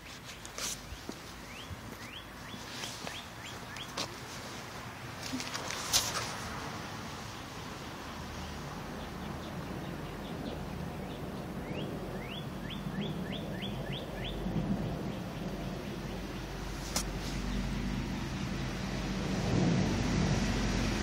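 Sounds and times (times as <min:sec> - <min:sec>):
small bird chirping: 0:00.2 - 0:04.0, 0:09.0 - 0:16.3.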